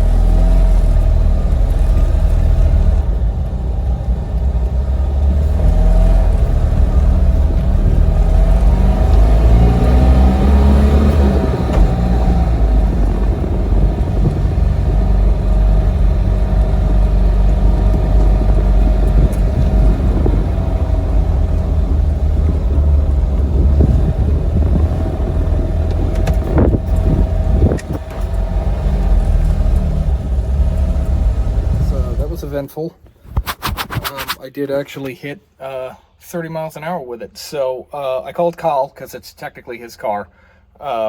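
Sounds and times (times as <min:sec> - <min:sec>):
small car engine accelerating: 0:00.0 - 0:32.6.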